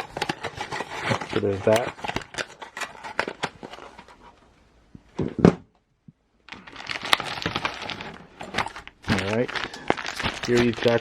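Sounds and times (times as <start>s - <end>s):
packaging clicks and rustles: 0.0s - 4.2s, 6.5s - 11.0s
dense crinkling and rustling: 0.0s - 4.5s, 6.5s - 11.0s.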